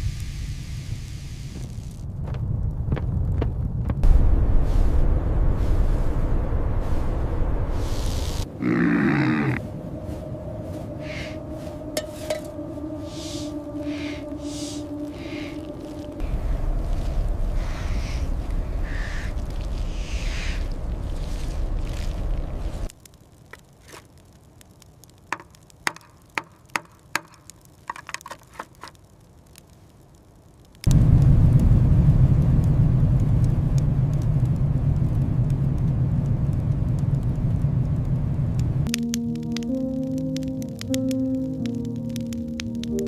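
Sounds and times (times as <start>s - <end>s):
soft wind-like whooshes: 2.4s - 8.6s, 9.4s - 22.9s
steady low drone: 4.0s - 22.9s
animal roar: 8.5s - 9.7s.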